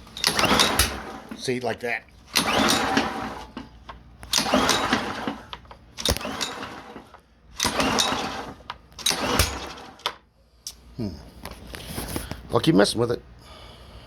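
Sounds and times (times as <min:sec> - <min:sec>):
engine recoil pull-start: 0:00.0 - 0:01.6, 0:02.2 - 0:10.2.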